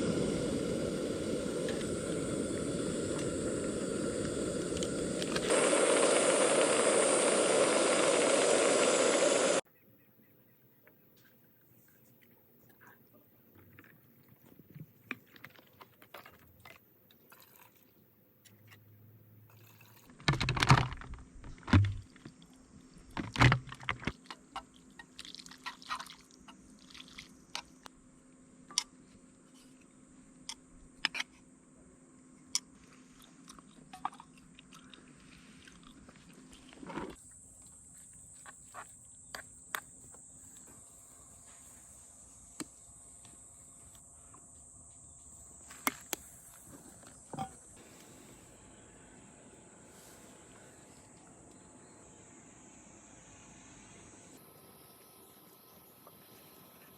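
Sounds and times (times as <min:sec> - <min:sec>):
chewing and crunching: 0:33.1 - 0:37.2.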